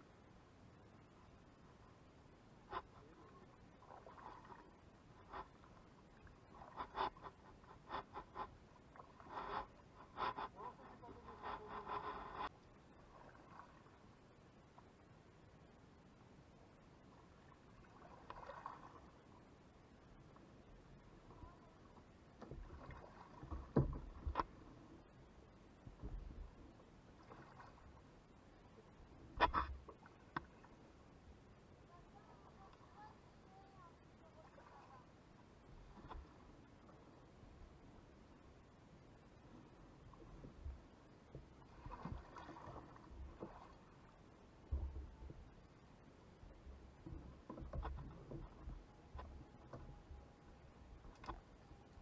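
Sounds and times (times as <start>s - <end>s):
paddle strokes in water: 2.7s - 14.1s, 17.2s - 19.5s, 21.2s - 25.0s, 26.0s - 28.1s, 34.2s - 35.1s, 40.0s - 45.7s, 46.4s - 52.0s.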